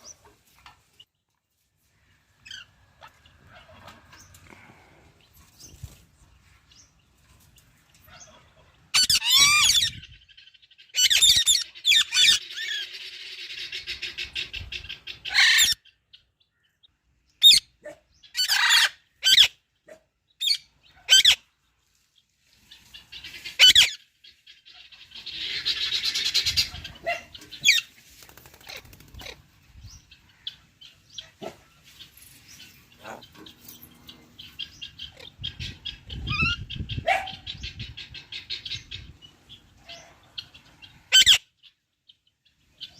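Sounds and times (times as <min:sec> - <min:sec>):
parrot screeching and chirping: 0:08.9 - 0:10.0, 0:10.9 - 0:13.0, 0:15.3 - 0:15.8, 0:18.4 - 0:19.6, 0:20.4 - 0:21.4, 0:23.6 - 0:24.0, 0:41.1 - 0:41.4.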